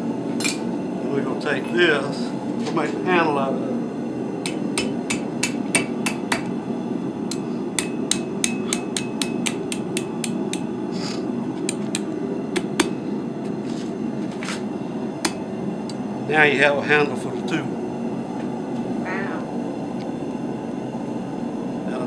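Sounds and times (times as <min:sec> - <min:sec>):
steady low hum: 0:00.0 - 0:22.0
hammer striking steel on anvil: 0:04.4 - 0:06.5, 0:07.3 - 0:10.7, 0:11.7 - 0:13.0.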